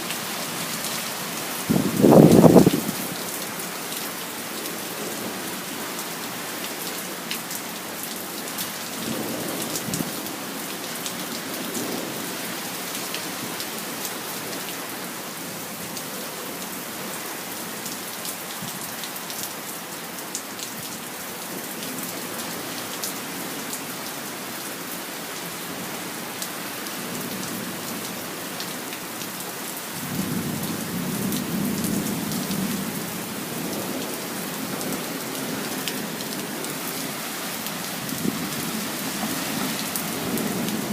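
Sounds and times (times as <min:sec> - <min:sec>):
rain pattering: 0:00.0 - 0:40.9
thunder rumbling: 0:01.7 - 0:03.0.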